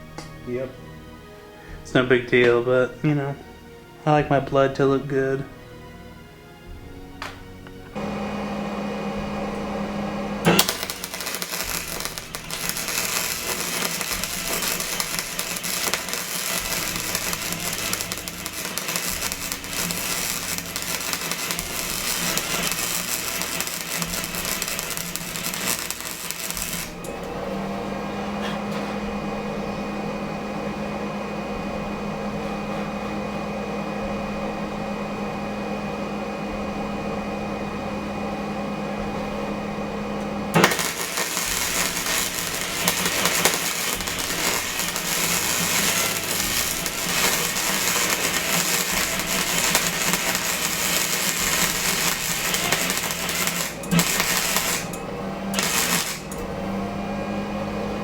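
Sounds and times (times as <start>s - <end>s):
steady hum: 7.8s - 58.0s
welding arc crackling: 7.9s - 27.6s, 40.5s - 56.5s.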